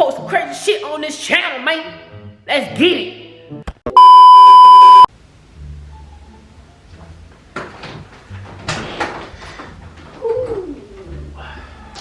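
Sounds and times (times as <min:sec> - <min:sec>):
censor bleep: 0:03.9 - 0:05.1.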